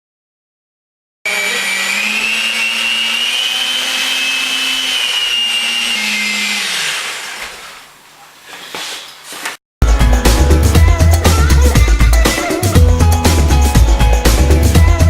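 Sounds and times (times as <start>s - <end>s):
electric kitchen mixer running: 1.3s - 8.0s.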